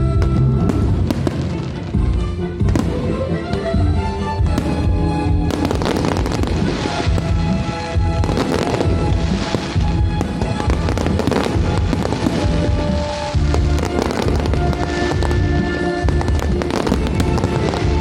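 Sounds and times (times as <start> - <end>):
fireworks bursting and crackling: 0.0 - 3.7, 4.4 - 18.0
music playing: 0.0 - 18.0.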